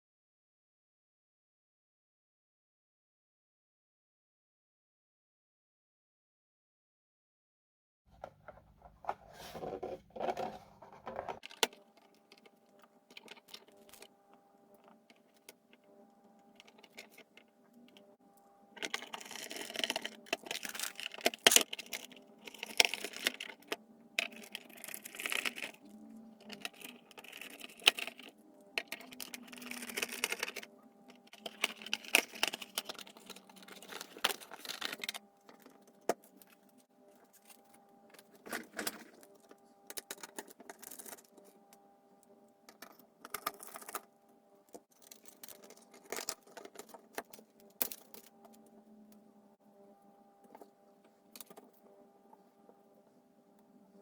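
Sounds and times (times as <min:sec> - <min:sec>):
faint steady hum: 0:08.1 - 0:54.0
small hard objects clattering: 0:18.8 - 0:36.6.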